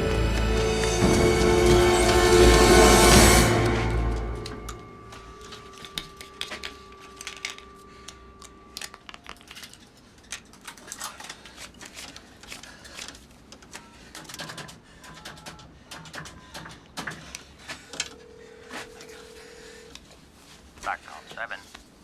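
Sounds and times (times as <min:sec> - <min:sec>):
steady electronic tones: 0:00.0 - 0:05.5
music: 0:00.0 - 0:08.9.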